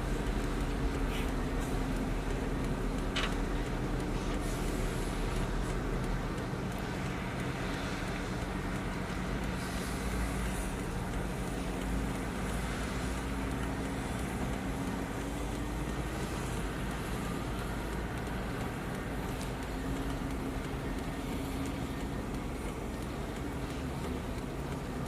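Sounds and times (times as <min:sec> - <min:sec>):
diesel engine running: 0:00.0 - 0:25.0.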